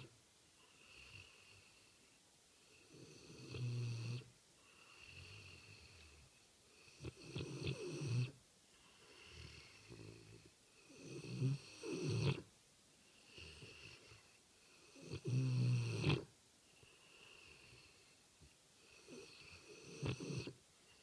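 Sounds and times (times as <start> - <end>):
rattling snore: 7.0 - 8.3, 11.0 - 12.4, 15.0 - 16.3, 19.0 - 20.6.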